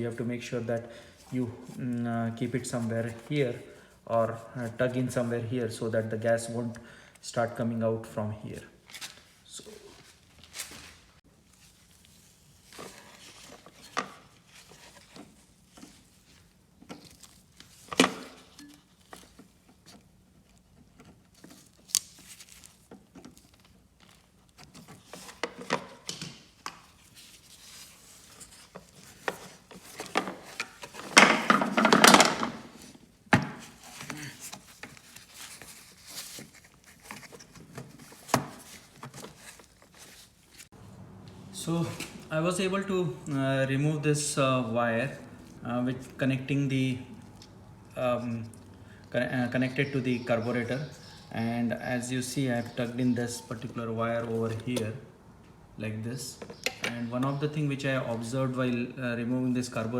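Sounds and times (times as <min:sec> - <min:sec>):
clattering handling noise: 0:12.6 - 0:40.4.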